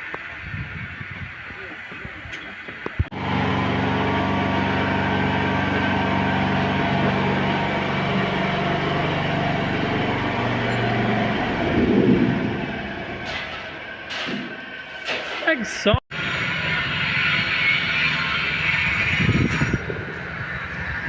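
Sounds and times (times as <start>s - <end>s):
low rumbling noise: 3.0s - 15.0s
dump truck engine running: 3.0s - 15.4s, 16.1s - 21.0s.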